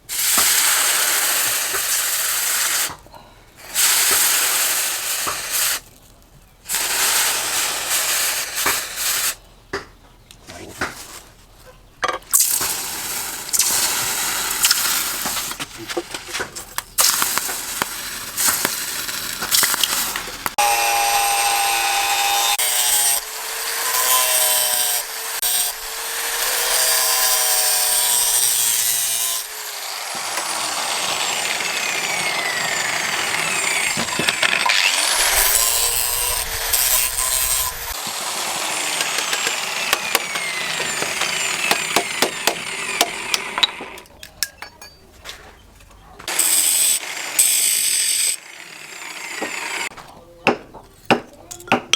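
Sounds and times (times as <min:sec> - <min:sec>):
power tool grinding: 0:00.0 - 0:05.8, 0:06.7 - 0:09.4, 0:12.3 - 0:44.1, 0:46.2 - 0:50.0.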